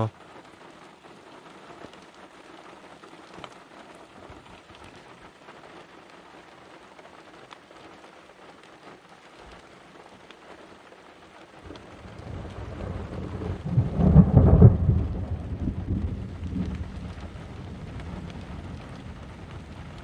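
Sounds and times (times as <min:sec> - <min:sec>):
steady rain falling: 0:00.0 - 0:20.0
low thunder rumble: 0:11.6 - 0:20.0.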